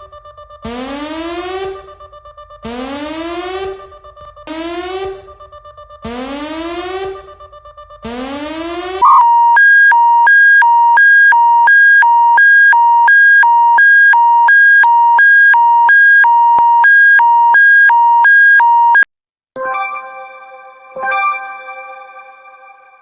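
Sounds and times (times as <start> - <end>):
electronic siren sweeping up: 0.6 - 2.0, 2.6 - 3.9, 4.5 - 5.4, 6.1 - 7.2, 8.0 - 19.0
two-tone electronic alert beeps: 8.9 - 19.1.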